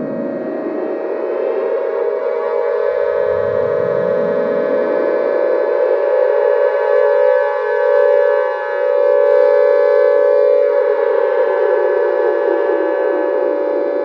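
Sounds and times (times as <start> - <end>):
loud siren-like monster drone: 0.0 - 14.0.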